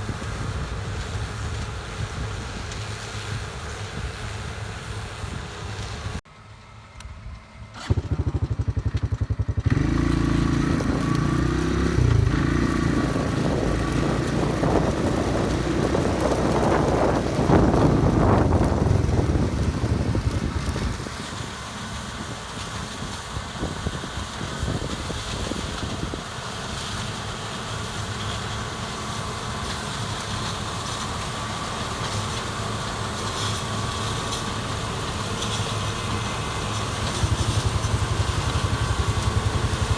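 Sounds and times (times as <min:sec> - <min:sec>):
diesel engine running: 0:00.0 - 0:39.9
starter motor cranking: 0:07.8 - 0:21.0.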